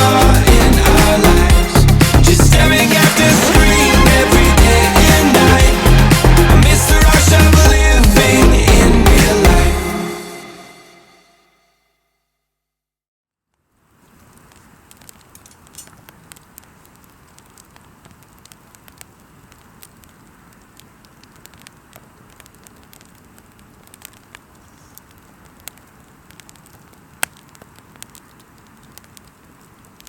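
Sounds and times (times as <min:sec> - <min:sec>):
campfire wood crackling: 0:00.0 - 0:09.5, 0:13.5 - 0:30.0
fire hiss: 0:00.0 - 0:10.1.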